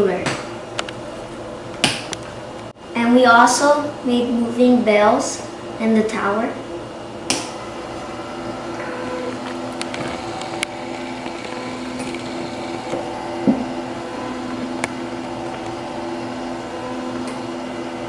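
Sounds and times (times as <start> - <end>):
small electric motor whirring: 8.1 - 17.6
mechanism clicks: 8.8 - 13.0.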